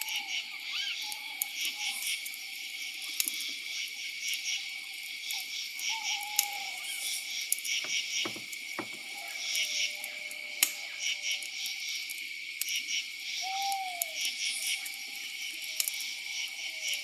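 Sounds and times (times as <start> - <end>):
insects chirping: 0.0 - 17.0
soft knocks: 7.8 - 9.1.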